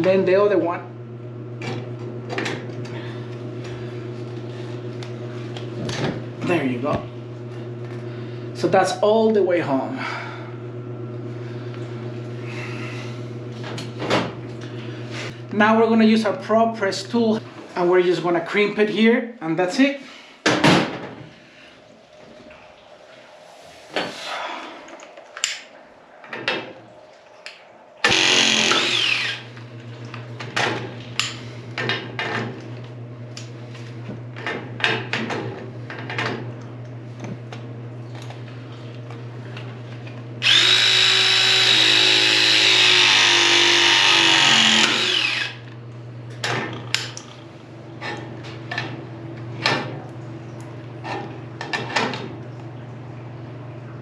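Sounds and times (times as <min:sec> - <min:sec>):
pressing tool motor whine: 0:28.0 - 0:29.6, 0:40.4 - 0:45.6.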